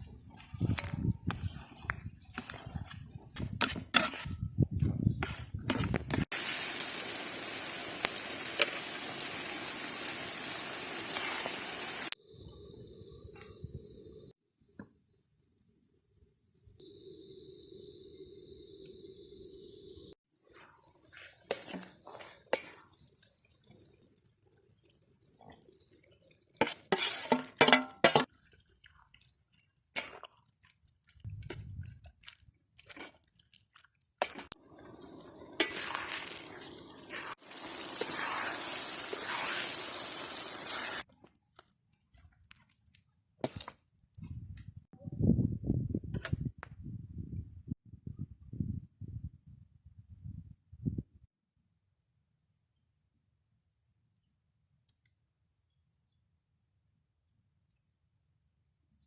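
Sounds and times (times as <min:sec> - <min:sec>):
insects chirping: 0:06.4 - 0:25.3, 0:34.6 - 0:40.9
water splashing: 0:20.4 - 0:41.0
cookware clinking: 0:27.0 - 0:28.3
rushing water: 0:34.6 - 0:41.0.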